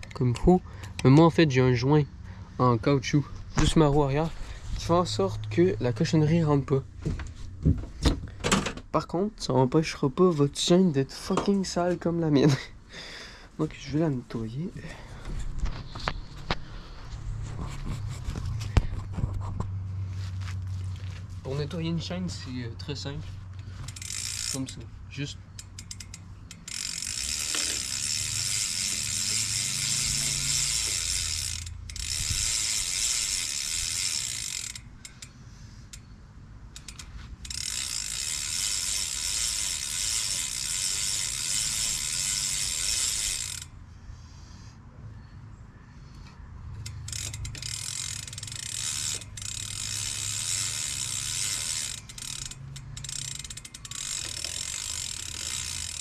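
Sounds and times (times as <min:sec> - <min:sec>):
bicycle hub ratcheting clicks: 0:00.0 - 0:01.3, 0:23.6 - 0:43.8, 0:46.2 - 0:56.0.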